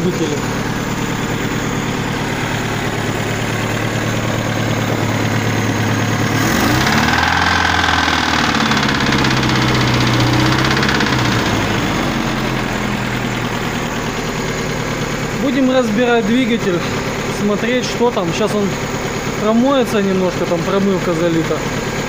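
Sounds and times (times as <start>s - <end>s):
car engine idling and revving: 0.0s - 22.0s
engine knocking: 0.0s - 22.0s.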